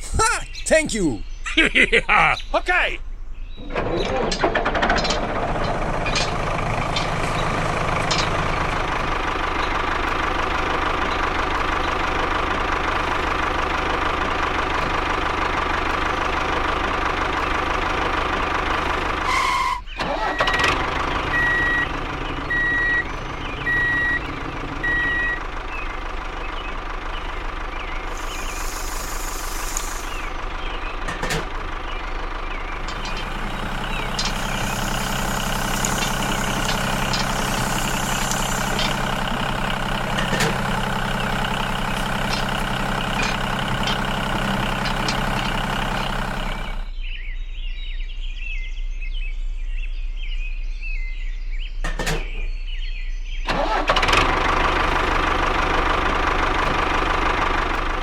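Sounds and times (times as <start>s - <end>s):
vehicle engine running: 3.1s - 47.3s, 53.5s - 58.0s
reversing alarm beeping: 21.2s - 25.5s
thin mechanical sound: 28.2s - 30.2s, 32.8s - 46.0s.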